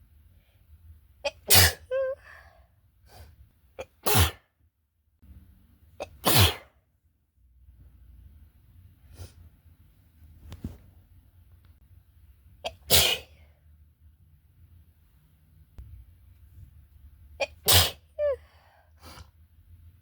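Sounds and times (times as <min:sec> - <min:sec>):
person sneezing: 0:01.3 - 0:02.3, 0:03.8 - 0:04.5, 0:06.0 - 0:06.8, 0:12.6 - 0:13.5, 0:17.4 - 0:19.3
faint breath: 0:18.4 - 0:19.4.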